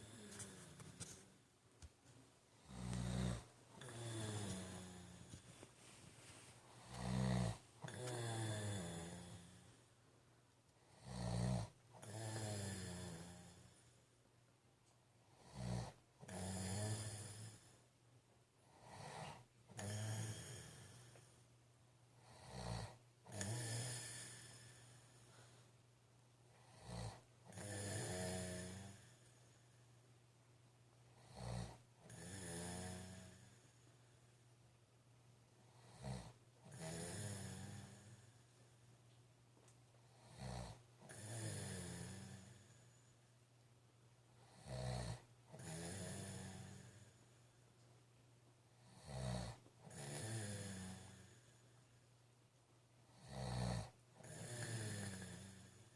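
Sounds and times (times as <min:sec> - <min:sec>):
man snoring: 0:00.0 - 0:01.2, 0:02.6 - 0:05.4, 0:06.7 - 0:09.8, 0:10.9 - 0:13.9, 0:15.3 - 0:17.8, 0:18.7 - 0:21.3, 0:22.2 - 0:25.5, 0:26.6 - 0:29.6, 0:31.2 - 0:33.8, 0:35.8 - 0:38.5, 0:40.1 - 0:43.0, 0:44.4 - 0:47.2, 0:48.8 - 0:51.7, 0:53.1 - 0:55.9.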